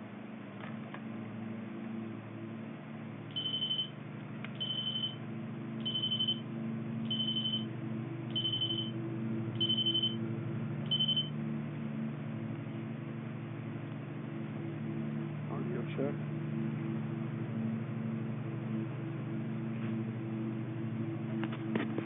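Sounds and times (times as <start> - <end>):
low hum: 0.0 - 22.0
high electronic phone beeps: 3.3 - 3.9, 4.6 - 5.2, 5.8 - 6.4, 7.1 - 7.7, 8.3 - 8.9, 9.6 - 10.2, 10.9 - 11.3.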